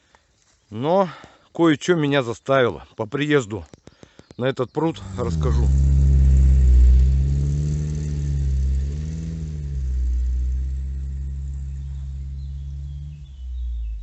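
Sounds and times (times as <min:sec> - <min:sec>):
vehicle engine revving: 0:04.9 - 0:14.0.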